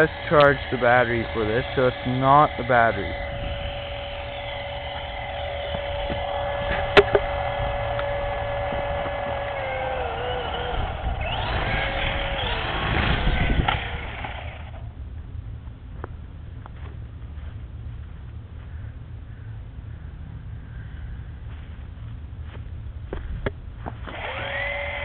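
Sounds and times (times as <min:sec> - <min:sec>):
toy helicopter motors whining: 0:00.0 - 0:14.9, 0:24.0 - 0:25.0
rotors rushing and fluttering: 0:00.0 - 0:15.0, 0:23.8 - 0:25.0.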